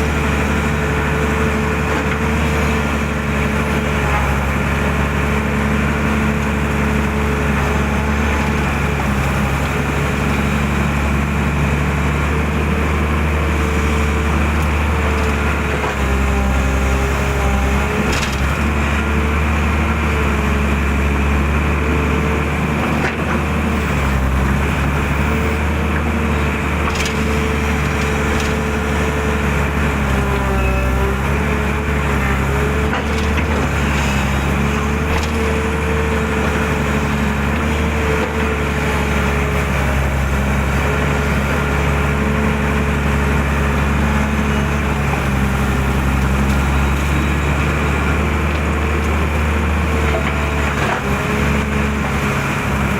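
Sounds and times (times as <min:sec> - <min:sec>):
excavator diesel engine: 0:00.0 - 0:52.9.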